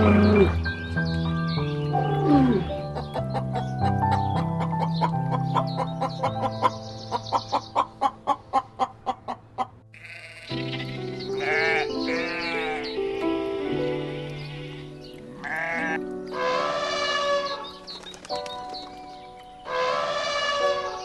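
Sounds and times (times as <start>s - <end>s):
background music with plucked notes: 0.0s - 21.0s
animal bleating: 9.9s - 16.0s.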